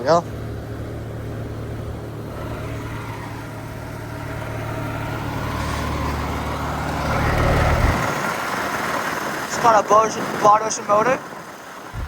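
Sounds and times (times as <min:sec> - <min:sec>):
heat pump compressor and fan hum: 0:00.0 - 0:12.0.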